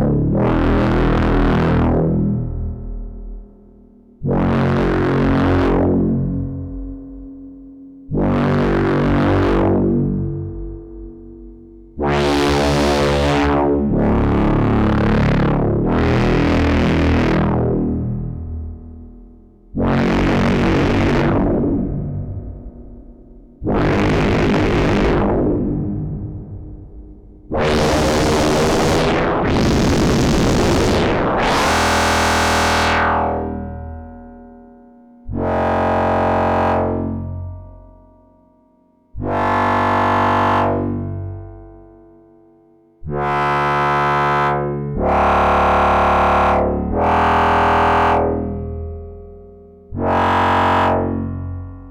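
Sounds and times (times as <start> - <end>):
synthesizer sequenced notes: 12.1 - 33.5.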